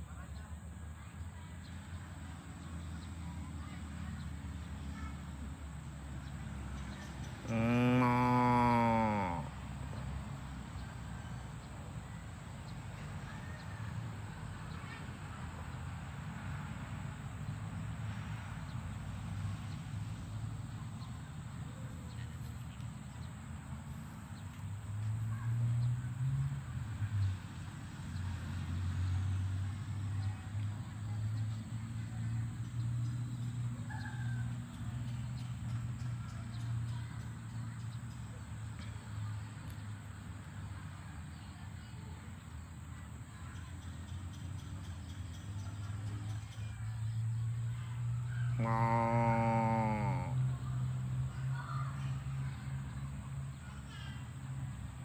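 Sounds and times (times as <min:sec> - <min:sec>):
cattle mooing: 0:07.4 - 0:09.6, 0:48.5 - 0:50.4.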